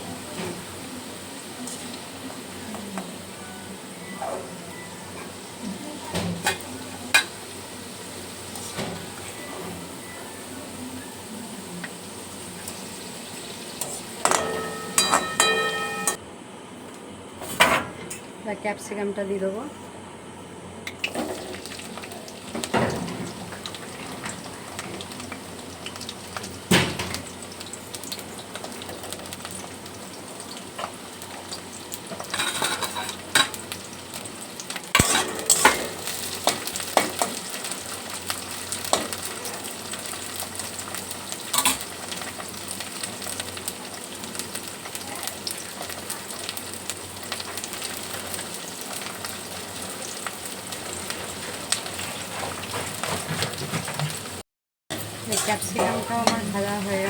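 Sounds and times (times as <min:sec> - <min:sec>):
vegetables sizzling in oil: 0:00.0 - 0:16.2, 0:20.9 - 0:57.0
utensil scraping a pan: 0:51.3 - 0:54.2.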